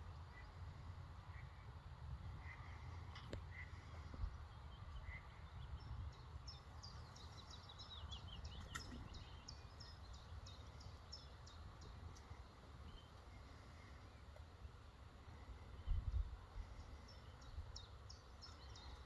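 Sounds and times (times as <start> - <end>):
wind rumble on microphone: 0.0 - 10.6, 15.4 - 18.0
songbird chirping and trilling: 2.4 - 19.0.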